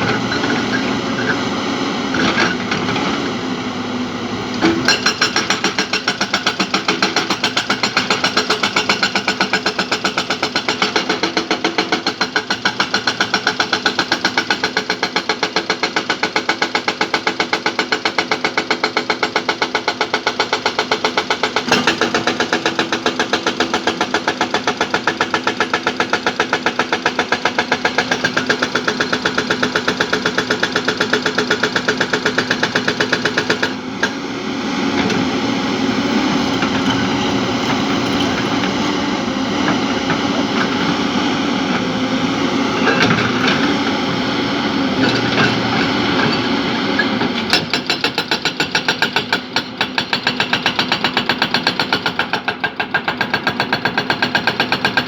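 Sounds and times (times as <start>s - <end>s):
heavy diesel engine pulsing: 33.7s - 47.5s.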